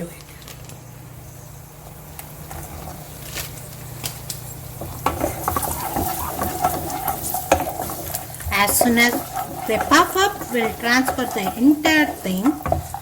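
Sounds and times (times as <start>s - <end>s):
cashews sizzling in hot oil: 0.4s - 13.0s
metal spoon scraping a pan: 4.8s - 13.0s.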